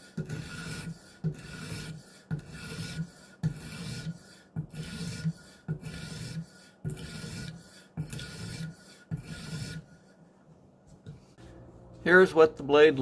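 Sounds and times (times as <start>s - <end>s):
knife scraping on sharpening stone: 0.0s - 10.2s.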